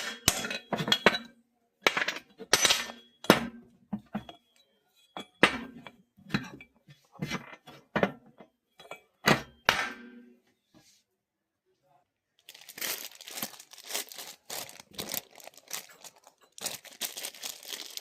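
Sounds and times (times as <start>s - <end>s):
metal tools clinking and knocking: 0.0s - 3.4s, 4.0s - 9.6s.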